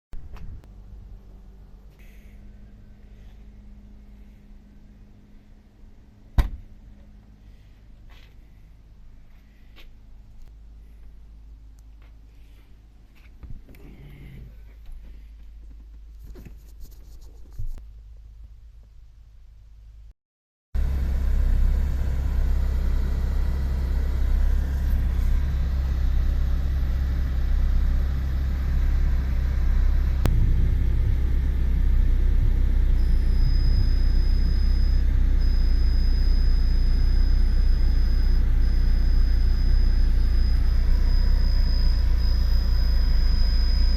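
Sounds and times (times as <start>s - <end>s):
fan running with rushing air: 20.8s - 43.9s
high ringing tone: 20.8s - 43.9s.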